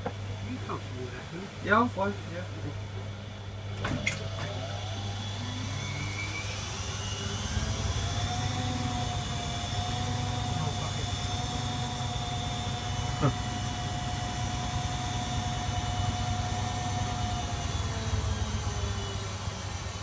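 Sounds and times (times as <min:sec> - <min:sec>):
washing machine motor whine: 0:00.0 - 0:20.0
low hum: 0:00.1 - 0:19.2.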